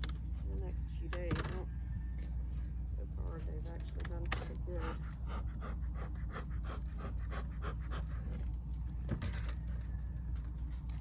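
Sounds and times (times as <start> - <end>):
rapid rhythmic panting: 4.6 - 8.6.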